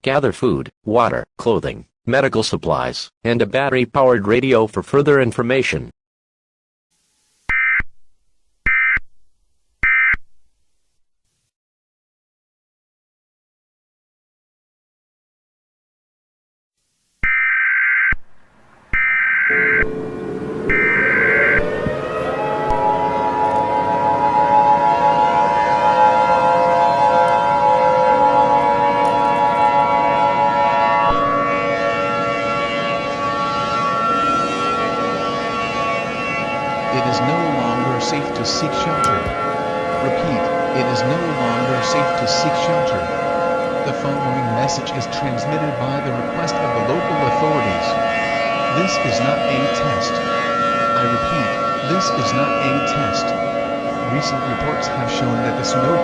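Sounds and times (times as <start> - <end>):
civil defense siren: 18.6 - 56.0.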